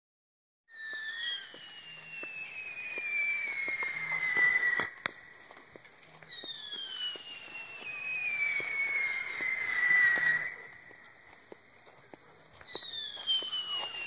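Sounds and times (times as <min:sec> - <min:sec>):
firework whistle falling in pitch: 0:00.7 - 0:05.2, 0:06.2 - 0:11.0, 0:12.6 - 0:14.0
firework pops: 0:00.9 - 0:10.6, 0:12.1 - 0:14.0.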